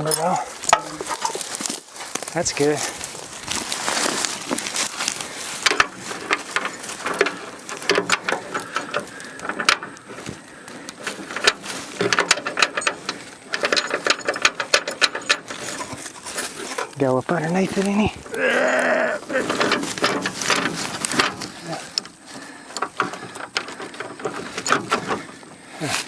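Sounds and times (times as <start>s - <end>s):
rapid clicking and rattling: 3.8s - 25.6s.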